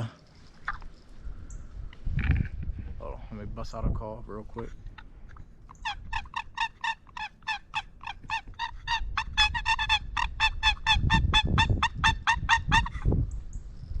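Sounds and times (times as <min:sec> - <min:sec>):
turkey box call yelps: 0:04.8 - 0:13.1.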